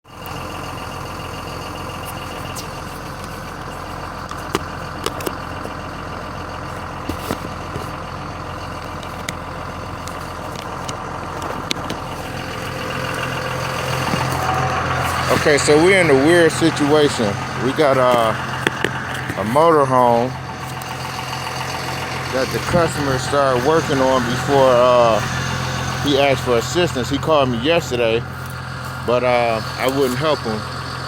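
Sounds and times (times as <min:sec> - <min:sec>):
vehicle engine idling: 0:00.1 - 0:31.0.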